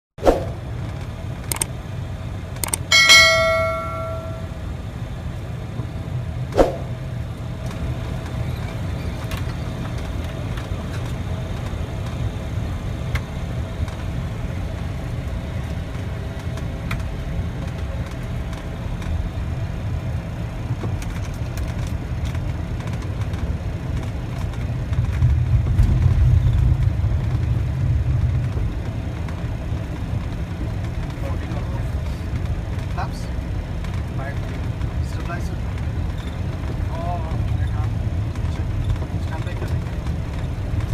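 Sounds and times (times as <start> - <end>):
airliner engine rumble: 0.2 - 40.9
sharp click: 1.5 - 1.7, 2.6 - 2.9
cabin chime: 2.9 - 4.6.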